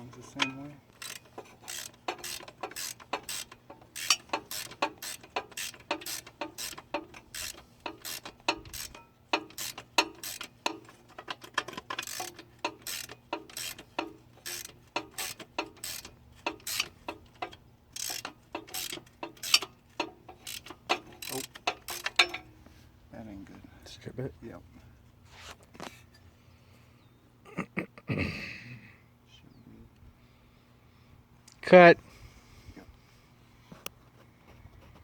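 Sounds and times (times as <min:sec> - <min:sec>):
ratchet wrench clicking: 0:00.4 - 0:22.5.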